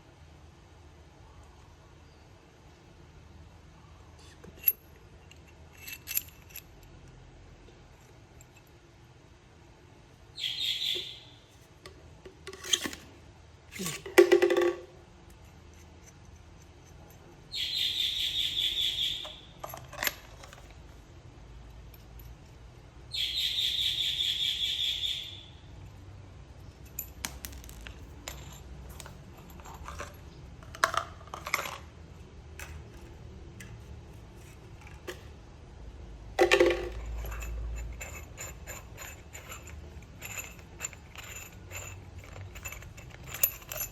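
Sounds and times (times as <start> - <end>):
metal parts clinking and knocking: 4.5 - 7.1, 12.3 - 13.1, 13.7 - 17.3, 19.2 - 20.8, 26.7 - 35.4, 36.4 - 43.9.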